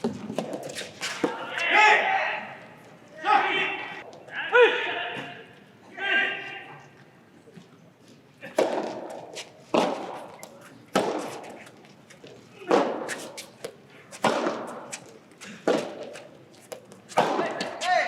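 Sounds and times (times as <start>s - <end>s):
rackets hitting soft tennis ball: 0.0s - 1.7s, 8.4s - 18.0s.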